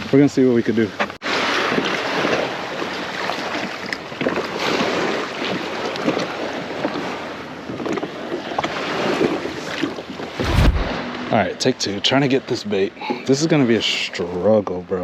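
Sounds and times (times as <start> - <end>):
water lapping and splashing: 0.0 - 14.4
wind buffeting microphone: 8.8 - 11.4.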